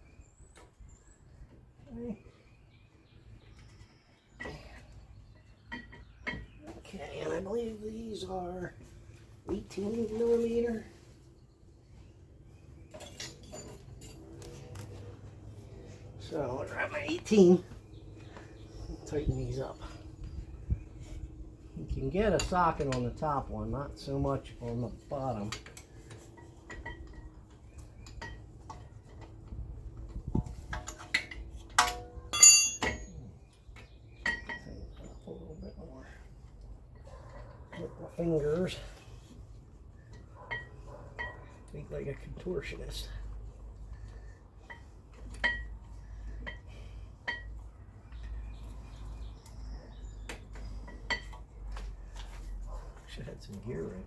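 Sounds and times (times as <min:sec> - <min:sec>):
wrench clinking on metal: 0:12.9 - 0:14.4, 0:30.7 - 0:33.2
hand tools clinking on metal: 0:12.9 - 0:14.9, 0:30.7 - 0:33.3, 0:40.1 - 0:42.7, 0:44.6 - 0:47.6
sharp metallic clanks: 0:30.7 - 0:33.2.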